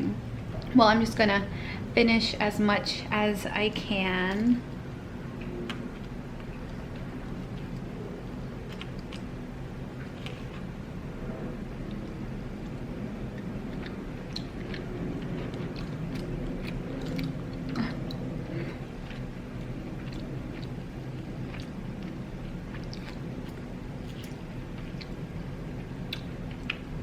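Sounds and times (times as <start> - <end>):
person chewing food: 5.4 - 11.0, 11.7 - 27.0.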